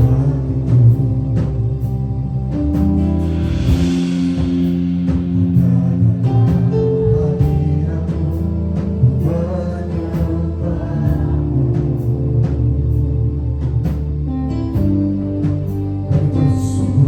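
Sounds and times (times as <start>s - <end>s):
bass line: 0.0s - 17.0s
guitar: 0.0s - 17.0s
keyboard chords: 0.0s - 17.0s
steady drum beat: 0.0s - 17.0s.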